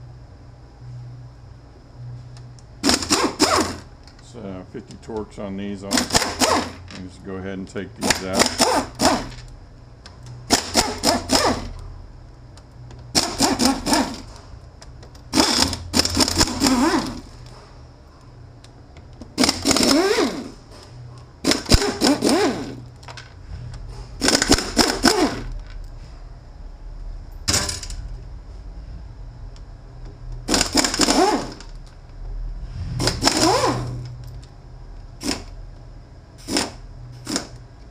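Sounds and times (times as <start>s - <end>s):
power driver spinning bolts: 19.3s - 20.5s.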